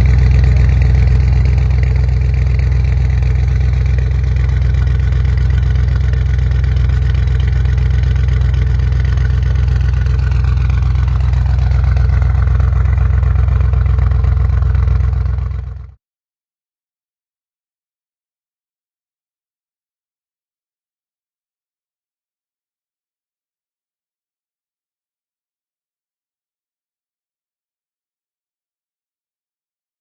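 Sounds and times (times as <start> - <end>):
car engine droning: 0.0 - 16.0.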